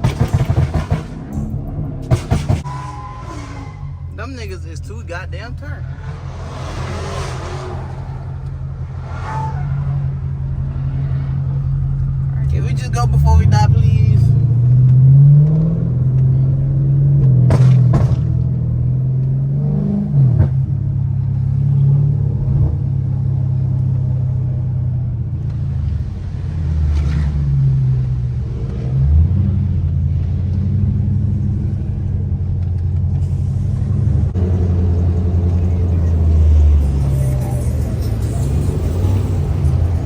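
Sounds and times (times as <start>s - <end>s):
sharp exhaust cracks: 0.0s - 19.5s
car engine revving: 0.0s - 40.0s.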